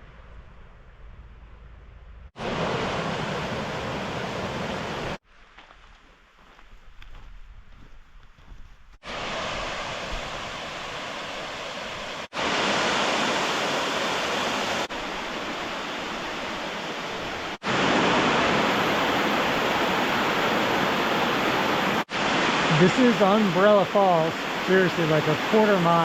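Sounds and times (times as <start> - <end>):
waterfall rushing: 9.0 - 26.0.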